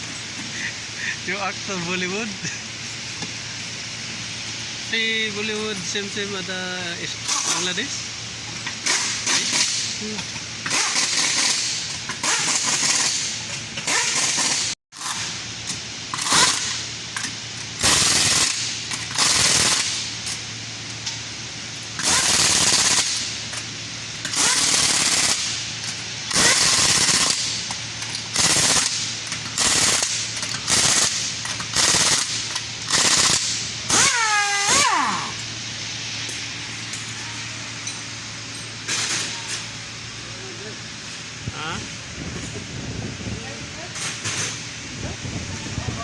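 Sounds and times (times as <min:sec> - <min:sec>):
pneumatic impact wrench rattling: 0:07.2 - 0:07.8, 0:08.5 - 0:37.2, 0:37.8 - 0:39.7, 0:43.9 - 0:44.7.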